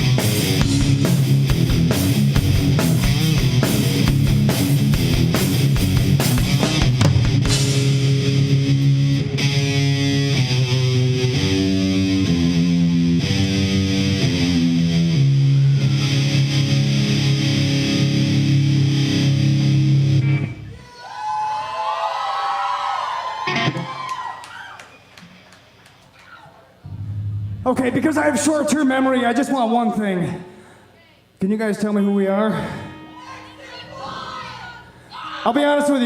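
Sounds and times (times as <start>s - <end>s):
rock band playing: 0.0s - 20.7s
crowd whooping and cheering: 20.6s - 26.7s.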